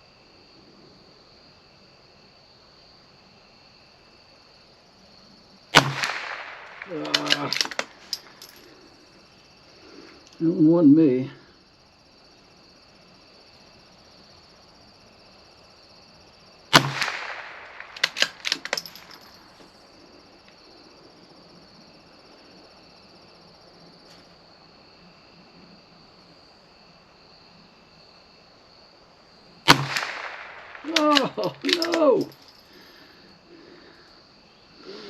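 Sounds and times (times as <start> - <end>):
rifle shot: 5.8 - 8.4, 16.7 - 19.3, 29.7 - 32.3
rifle bolt clicks: 5.8 - 8.5, 16.8 - 19.3, 29.7 - 32.4.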